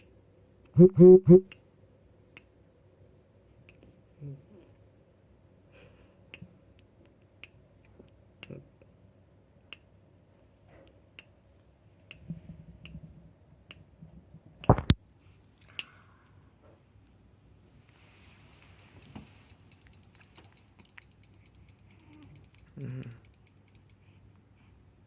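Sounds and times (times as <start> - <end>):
loud double thump: 14.7 - 15.0
sharp irregular clicks: 19.6 - 24.0.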